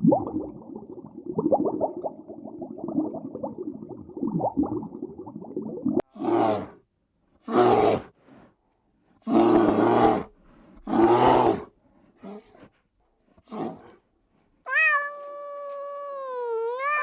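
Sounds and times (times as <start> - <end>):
cat meowing: 14.7 - 17.0.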